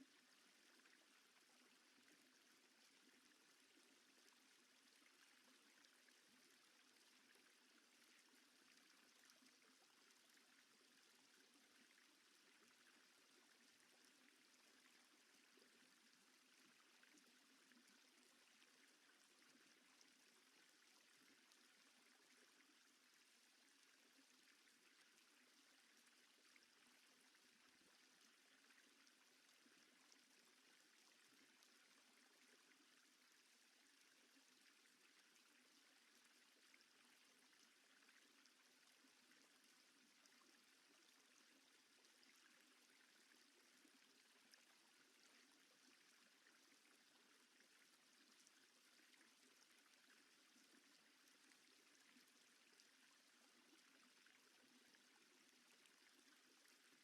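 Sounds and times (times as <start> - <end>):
faint steady hiss: 0.0 - 57.0.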